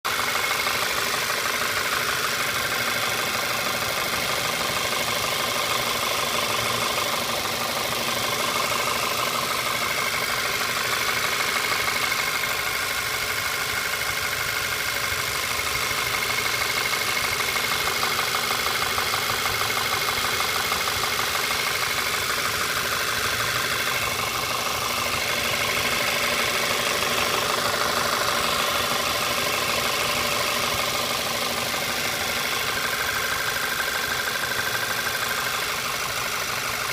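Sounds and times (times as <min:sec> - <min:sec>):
car engine idling: 0:00.0 - 0:36.9
rapid engine knocking: 0:00.1 - 0:36.9.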